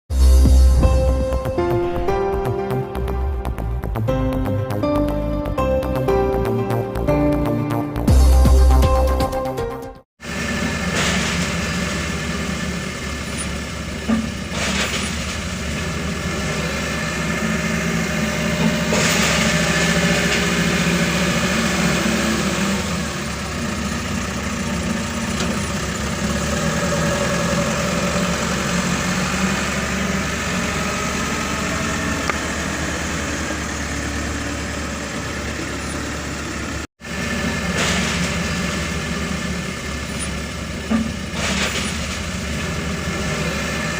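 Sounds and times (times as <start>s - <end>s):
bulldozer diesel engine running: 10.2s - 43.9s.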